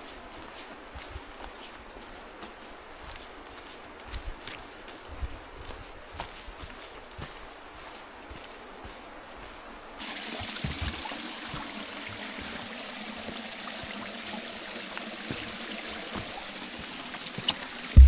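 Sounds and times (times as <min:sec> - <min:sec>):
water trickling in a stream: 0:10.0 - 0:18.0.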